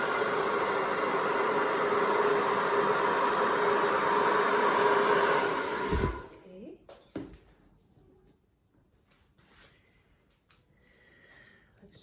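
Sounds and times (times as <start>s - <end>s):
hair dryer blowing: 0.0s - 6.4s.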